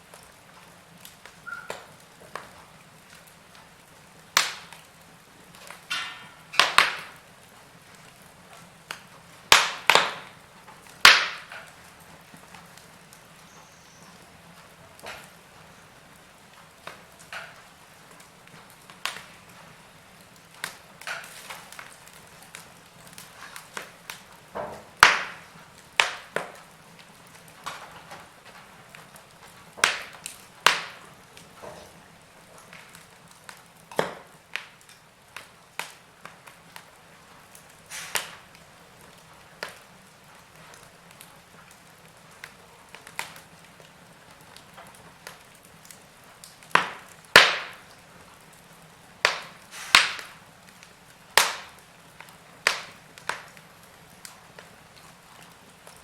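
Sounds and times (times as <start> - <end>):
faint steady hiss: 0.0 - 56.0
wood fire crackling and popping: 0.0 - 56.0.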